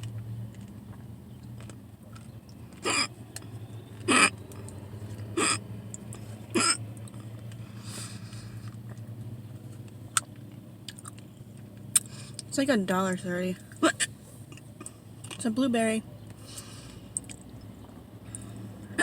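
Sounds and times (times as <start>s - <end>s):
person hiccuping: 2.8s - 3.2s, 4.1s - 4.4s, 5.4s - 5.6s, 6.5s - 6.8s, 13.8s - 14.1s.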